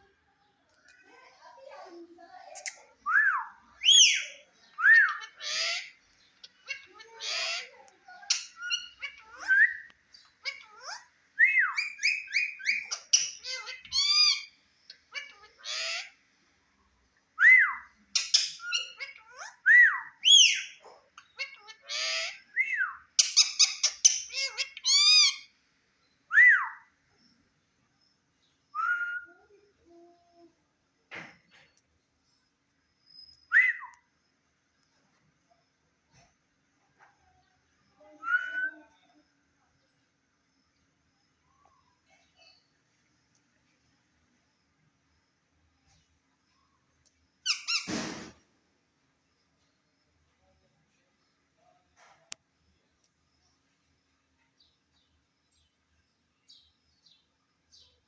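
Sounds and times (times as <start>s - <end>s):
parakeet whistling and squawking: 2.6s - 14.5s, 17.5s - 20.8s, 21.4s - 25.5s, 47.5s - 48.0s.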